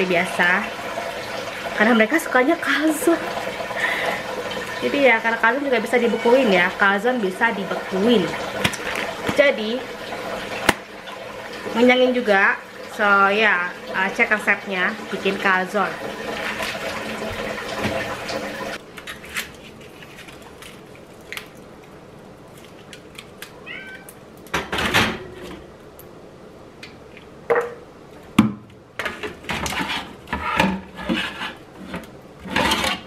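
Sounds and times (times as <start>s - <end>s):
running tap water: 0.0s - 18.8s
cat meowing: 5.9s - 6.5s, 23.6s - 24.2s
knocks of kitchen work: 24.5s - 25.6s, 28.4s - 31.3s.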